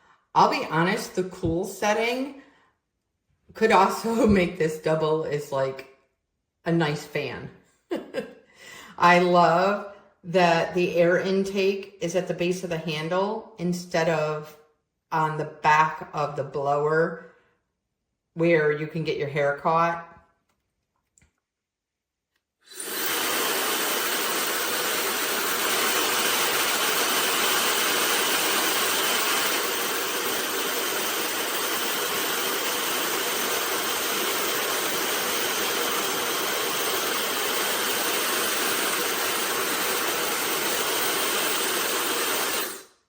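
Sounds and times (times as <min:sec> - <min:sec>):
hair dryer blowing air: 0:22.7 - 0:42.9.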